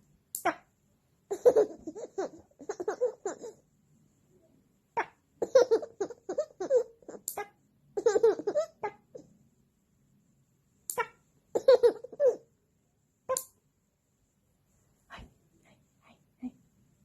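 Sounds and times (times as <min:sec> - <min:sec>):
baby giggling and laughing: 0:01.3 - 0:03.6, 0:05.0 - 0:09.2, 0:11.6 - 0:12.5.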